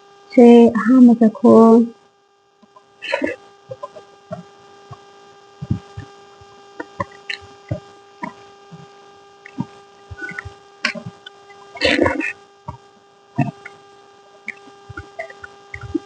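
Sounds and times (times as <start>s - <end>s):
electrical hum: 0.0s - 16.0s
soft low thumps: 5.6s - 6.2s, 14.9s - 16.0s.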